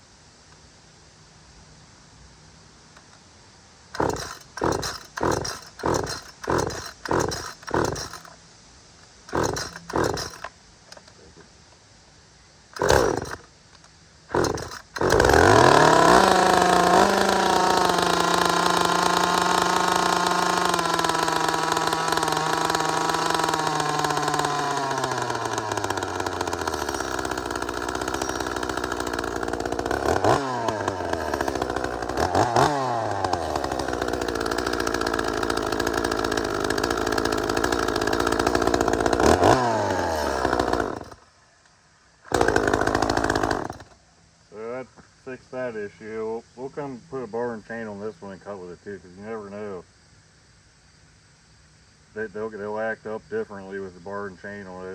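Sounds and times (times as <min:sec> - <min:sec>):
chainsaw engine running: 0:04.0 - 0:08.4, 0:09.2 - 0:10.5, 0:12.8 - 0:13.5, 0:14.3 - 0:41.2, 0:42.2 - 0:44.0
starter rope pulls: 0:04.0 - 0:08.4, 0:09.0 - 0:11.0, 0:12.8 - 0:13.5, 0:14.3 - 0:41.2, 0:42.3 - 0:44.0.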